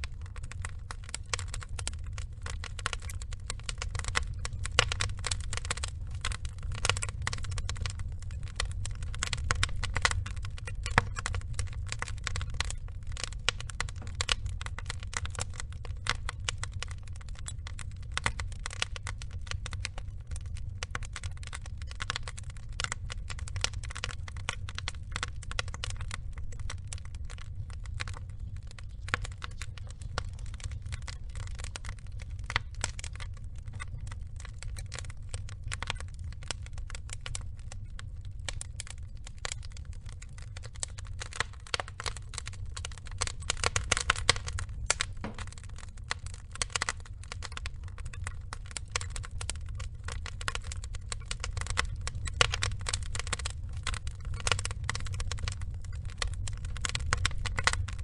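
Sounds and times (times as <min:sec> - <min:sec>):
low steady rumble: 0:00.0 - 0:58.0
wood fire crackling and popping: 0:00.0 - 0:58.0.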